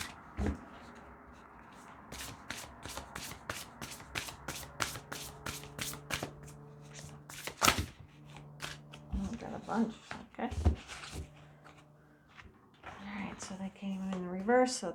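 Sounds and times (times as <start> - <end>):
cards being shuffled: 0.0 - 0.6, 2.0 - 9.5.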